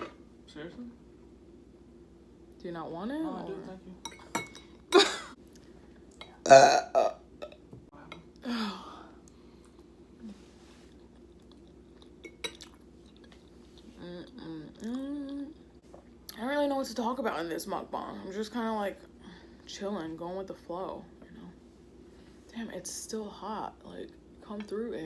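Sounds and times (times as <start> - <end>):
person burping loudly: 6.4 - 7.2.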